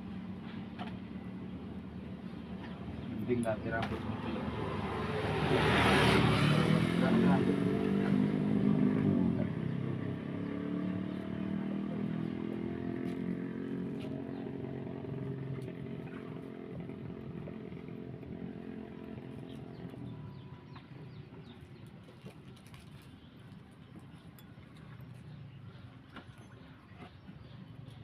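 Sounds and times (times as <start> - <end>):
motorcycle engine running: 7.4 - 21.6.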